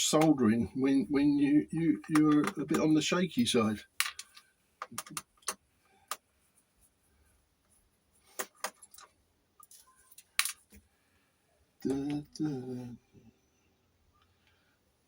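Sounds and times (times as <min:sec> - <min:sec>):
small tools clicking and tapping: 0:04.0 - 0:06.2.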